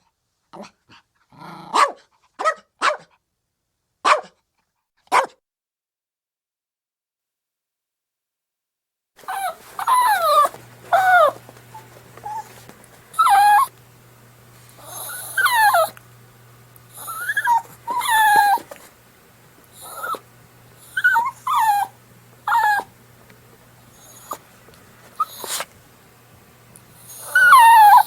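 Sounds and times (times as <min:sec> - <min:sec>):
puppy whining and whimpering: 0:09.2 - 0:13.8, 0:14.8 - 0:16.0, 0:16.9 - 0:18.9, 0:19.7 - 0:20.2, 0:20.8 - 0:23.0, 0:23.9 - 0:25.7, 0:27.0 - 0:28.0.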